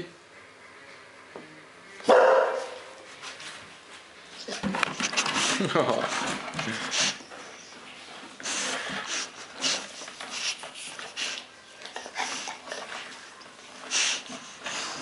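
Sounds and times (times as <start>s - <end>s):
puppy breathing and sniffing: 4.4s - 15.0s.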